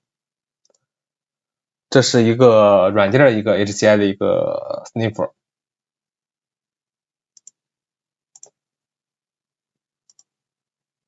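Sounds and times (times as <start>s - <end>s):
computer mouse double-clicks: 7.4s - 7.6s, 8.3s - 8.6s, 10.1s - 10.4s.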